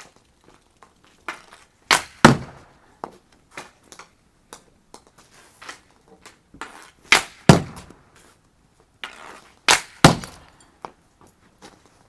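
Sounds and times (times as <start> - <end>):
puck hitting wall: 1.2 - 4.2, 4.9 - 8.0, 9.0 - 10.5
stick slapping plastic puck: 5.7 - 7.9.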